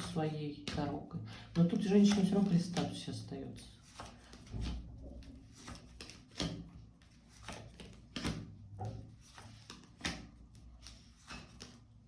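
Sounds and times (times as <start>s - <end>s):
soft rustling of cards: 0.0s - 12.0s
cards clacking on a table: 3.9s - 11.8s.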